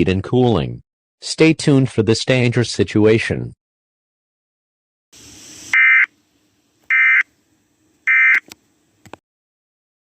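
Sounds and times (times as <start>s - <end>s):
brief hiss: 5.2s - 5.9s
short buzzing data bursts: 5.2s - 6.1s, 6.9s - 7.3s, 8.1s - 8.5s.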